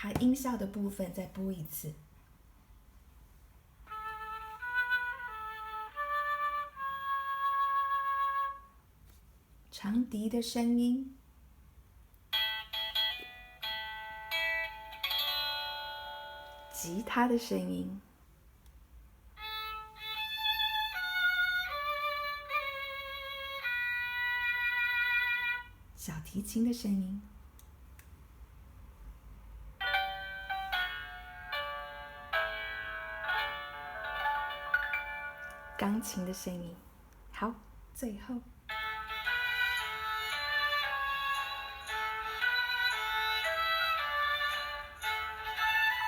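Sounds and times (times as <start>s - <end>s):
flute melody: 3.9s - 8.8s.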